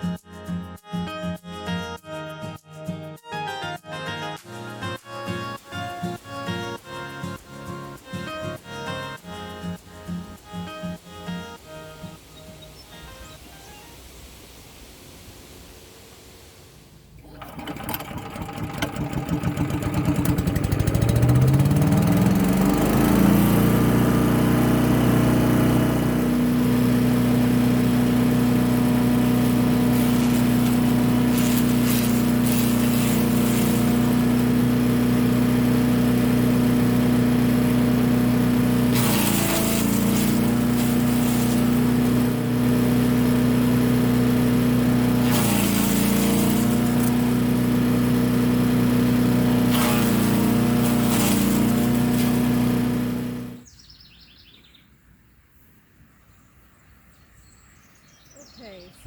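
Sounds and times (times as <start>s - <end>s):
small petrol engine running: 17.1s - 53.6s.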